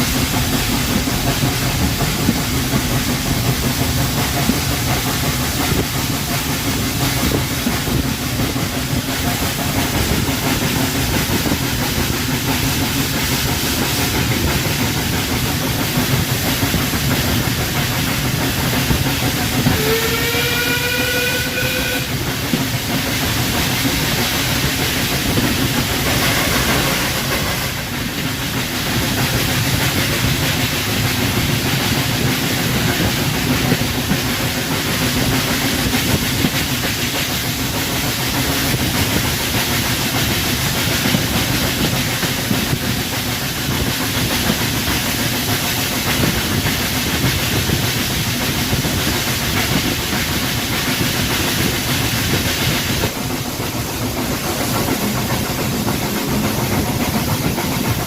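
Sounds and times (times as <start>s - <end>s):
train rumble and hiss: 0.0s - 58.0s
train whistle: 19.6s - 22.3s.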